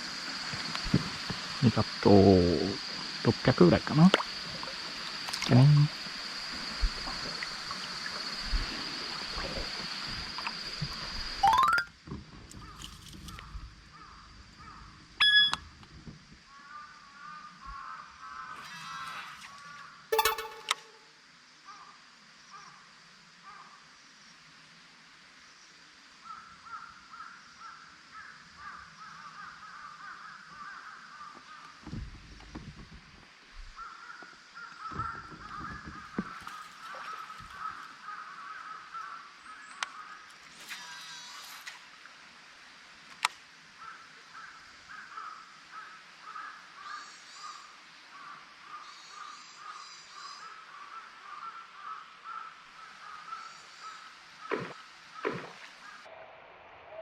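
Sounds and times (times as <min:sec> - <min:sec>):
crows cawing: 0:16.5 - 0:18.6, 0:26.3 - 0:31.7, 0:33.8 - 0:39.3, 0:43.8 - 0:56.0
sharp click: 0:20.2 - 0:21.0.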